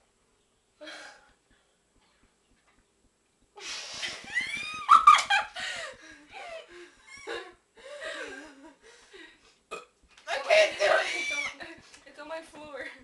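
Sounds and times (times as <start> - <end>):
girls laughing: 4.0 - 8.9, 10.4 - 11.8.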